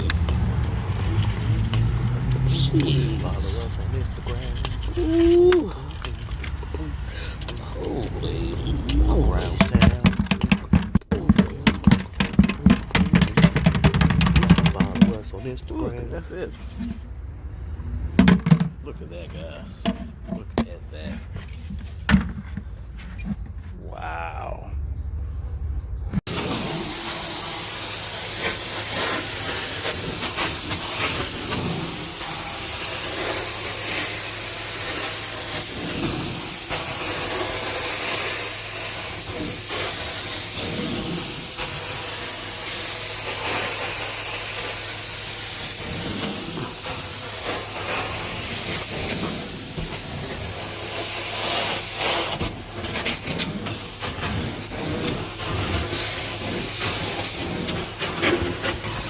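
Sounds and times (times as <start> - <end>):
carpet cleaner suction hiss: 26.3 - 59.0.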